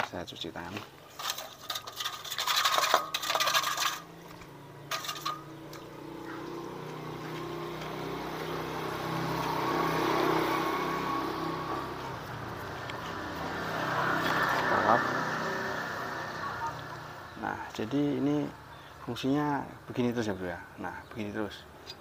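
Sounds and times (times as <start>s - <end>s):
vehicle engine hum: 1.0s - 19.0s
sharp clattering: 1.1s - 6.6s.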